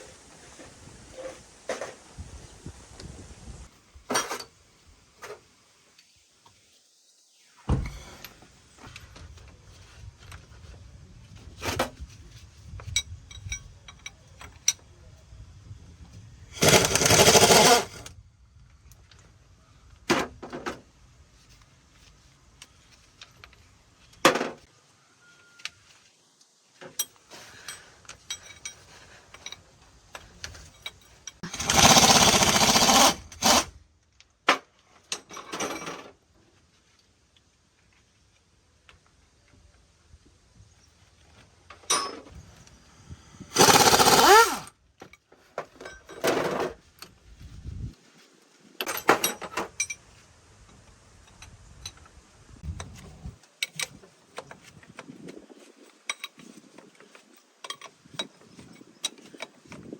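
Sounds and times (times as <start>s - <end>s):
power tool bursts: 16.6s - 18.1s, 31.4s - 33.7s, 43.5s - 44.7s.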